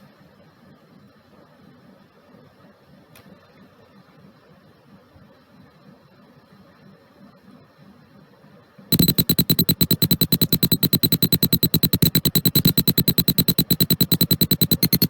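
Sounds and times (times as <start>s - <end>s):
piezo buzzer pulsing high tone: 8.9s - 15.0s.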